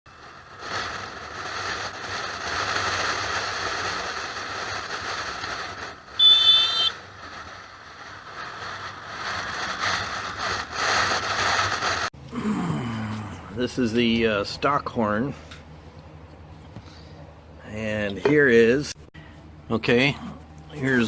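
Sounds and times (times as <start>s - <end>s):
steady rushing noise: 0.1s - 12.1s
high-pitched horn beep: 6.2s - 6.9s.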